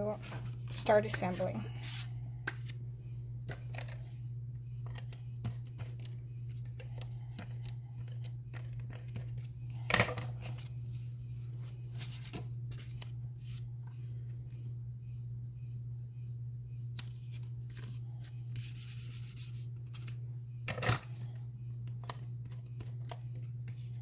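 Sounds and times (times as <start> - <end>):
steady low hum: 0.0 - 24.0
paper crinkle: 4.8 - 9.5
paper rustling and clicking: 4.8 - 10.7, 21.9 - 24.0.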